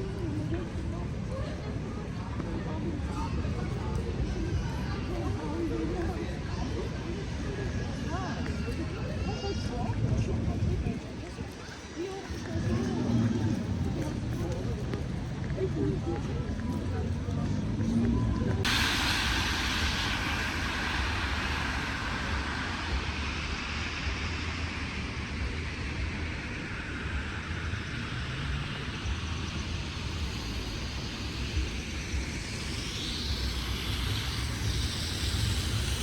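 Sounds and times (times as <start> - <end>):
low traffic rumble: 0.0 - 36.0
tyre hiss from passing cars: 11.4 - 36.0.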